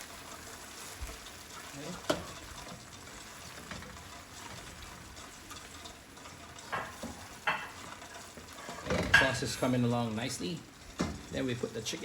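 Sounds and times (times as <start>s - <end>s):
sauce bubbling in a wok: 0.0s - 12.0s.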